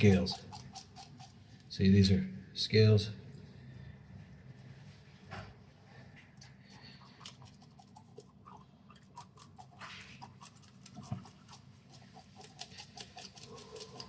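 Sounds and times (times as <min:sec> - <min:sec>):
spoon scraping fish scales: 0:00.0 - 0:01.6, 0:09.0 - 0:14.0
low steady hum: 0:00.0 - 0:14.0.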